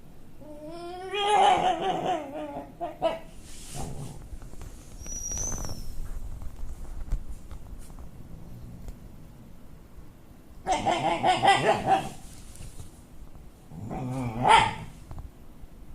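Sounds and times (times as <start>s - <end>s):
rustling: 3.3s - 9.0s, 11.8s - 15.3s
high squeak: 4.9s - 6.1s.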